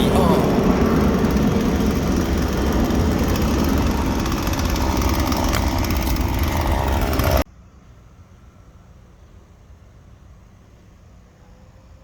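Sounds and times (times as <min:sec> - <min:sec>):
chainsaw running: 0:00.0 - 0:07.4.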